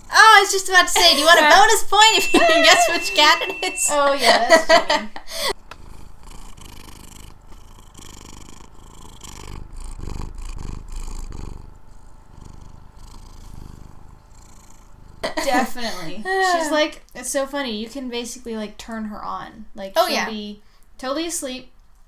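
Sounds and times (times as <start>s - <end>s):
cat purring: 0.0s - 0.9s, 5.5s - 16.3s.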